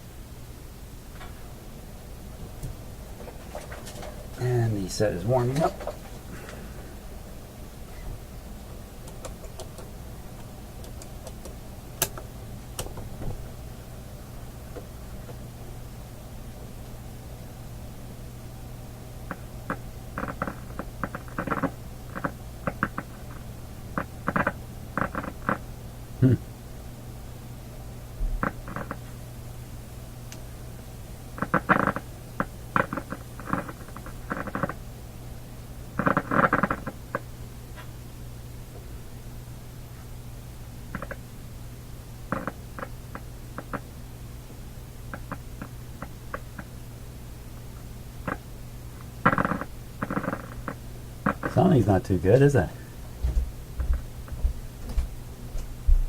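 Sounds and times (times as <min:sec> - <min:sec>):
low mains hum: 0:00.0 - 0:56.0
radio crackling and popping: 0:02.5 - 0:06.8, 0:19.2 - 0:26.4, 0:28.3 - 0:29.2, 0:31.4 - 0:34.9, 0:35.9 - 0:37.9, 0:40.9 - 0:41.3, 0:42.2 - 0:44.0, 0:45.0 - 0:46.8, 0:47.6 - 0:55.1.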